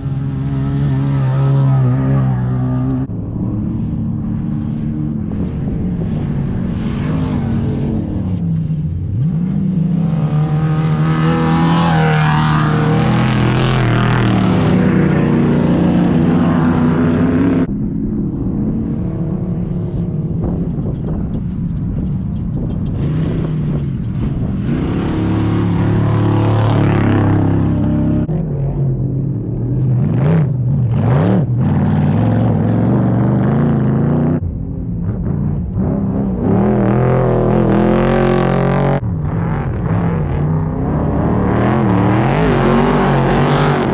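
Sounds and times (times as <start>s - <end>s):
race vehicle engine revving: 7.0s - 17.7s, 19.0s - 28.8s, 35.0s - 43.9s.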